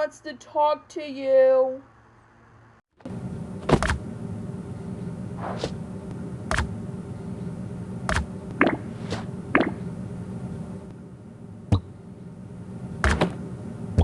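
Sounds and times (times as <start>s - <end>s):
steady low hum: 0.0s - 14.0s
sharp thumps and knocks: 3.6s - 4.0s, 13.0s - 13.4s.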